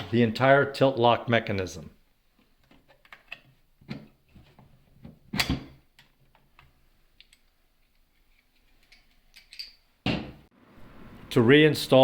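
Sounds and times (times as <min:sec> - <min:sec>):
small metal parts clicking: 0:07.2 - 0:09.8.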